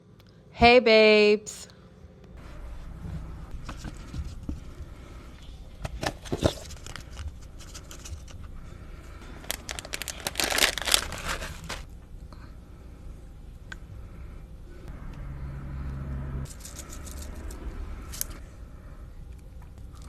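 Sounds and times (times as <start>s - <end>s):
food packaging crinkling and tearing: 6.0s - 8.4s, 9.2s - 11.9s.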